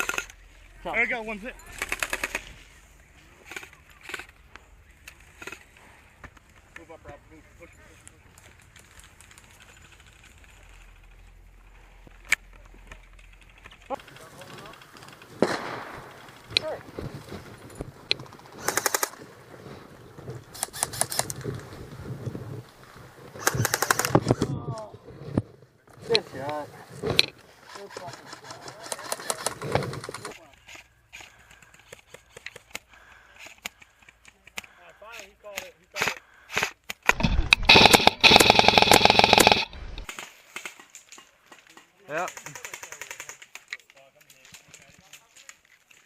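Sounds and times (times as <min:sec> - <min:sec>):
airsoft rifle full-auto bursts: 0:00.0 - 0:00.3, 0:01.6 - 0:02.5, 0:18.6 - 0:19.2, 0:23.4 - 0:24.2, 0:36.0 - 0:40.1.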